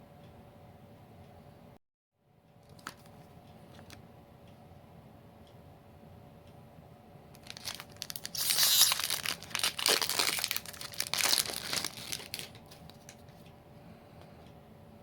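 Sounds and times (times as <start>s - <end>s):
crinkly foil wrapper tearing: 7.4s - 13.2s.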